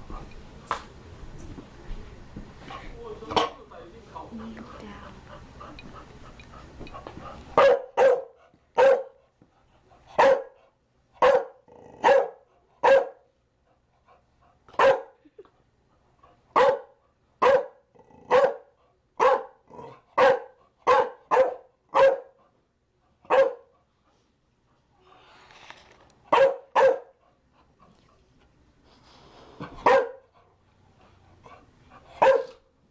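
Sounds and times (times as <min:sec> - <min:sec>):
dog barking: 0:07.6 - 0:09.2, 0:10.2 - 0:10.6, 0:11.2 - 0:13.3, 0:14.8 - 0:15.2, 0:16.5 - 0:19.6, 0:20.2 - 0:22.4, 0:23.3 - 0:23.7, 0:26.3 - 0:27.2, 0:29.8 - 0:30.3, 0:32.2 - 0:32.6.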